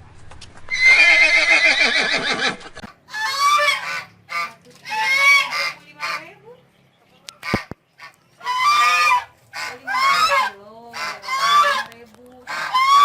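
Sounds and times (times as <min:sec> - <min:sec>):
horse whinnying: 0:00.7 - 0:03.9
goose honks: 0:03.1 - 0:06.4, 0:07.4 - 0:13.0.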